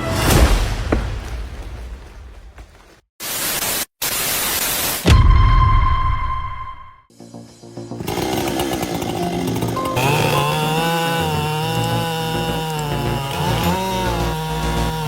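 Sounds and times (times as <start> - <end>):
chainsaw running: 7.7 - 15.0.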